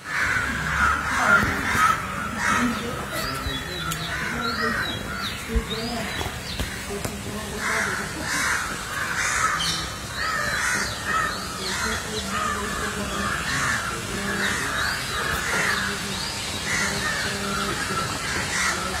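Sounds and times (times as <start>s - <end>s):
harsh bird calls: 0.0s - 19.0s.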